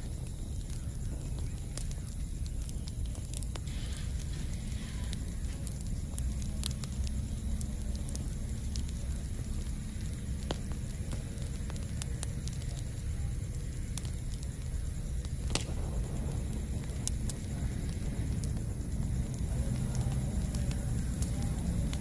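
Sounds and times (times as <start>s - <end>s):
burning wood crackling: 0.0s - 22.0s
low rumble of flames: 0.0s - 22.0s.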